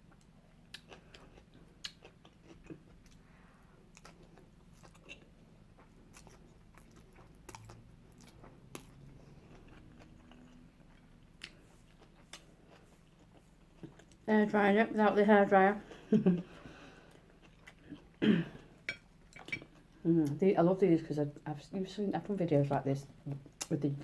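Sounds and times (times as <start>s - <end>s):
person chewing food: 0.0s - 14.3s, 15.9s - 20.0s.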